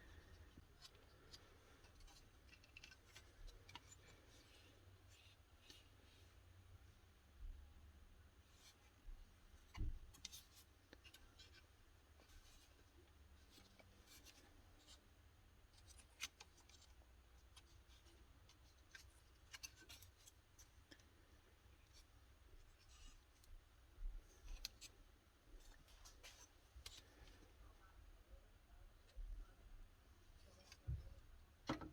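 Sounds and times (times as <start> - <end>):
small parts clicking and scraping: 0.1 - 4.6.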